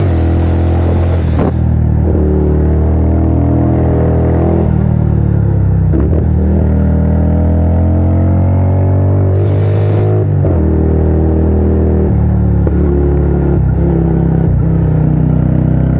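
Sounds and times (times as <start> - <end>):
motorcycle engine running: 0.0 - 15.9.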